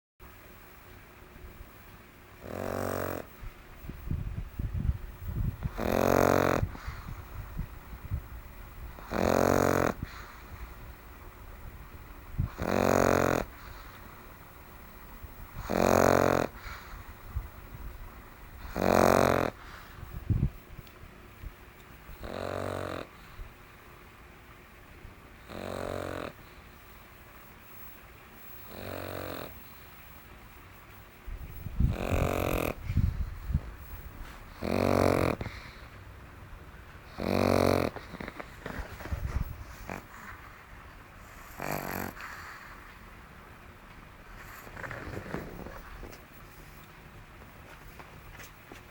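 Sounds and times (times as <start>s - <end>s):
dog snuffling: 2.4s - 3.3s, 5.1s - 14.4s, 15.1s - 20.2s, 22.1s - 23.4s, 28.5s - 30.2s, 31.4s - 36.0s, 37.0s - 43.2s, 44.2s - 48.9s
dog snoring loudly: 2.4s - 3.4s, 4.1s - 20.6s, 22.0s - 23.4s, 25.4s - 26.6s, 28.4s - 30.1s, 31.4s - 36.0s, 37.0s - 43.2s, 44.2s - 46.8s.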